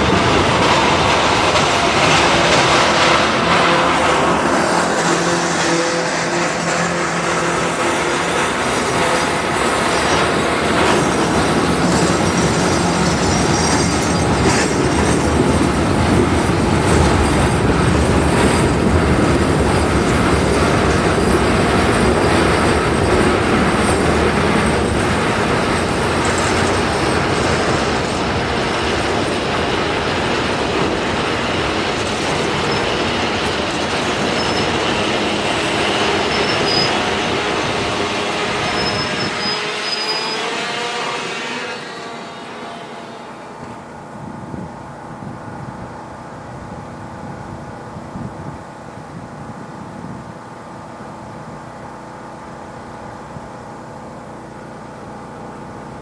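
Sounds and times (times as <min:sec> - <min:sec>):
wheels clacking over rail joints: 0:00.0 - 0:41.4
freight train rolling past: 0:00.0 - 0:56.0
high-pitched wheel squeals: 0:11.8 - 0:15.2, 0:34.2 - 0:35.0, 0:36.1 - 0:37.1, 0:38.3 - 0:43.5.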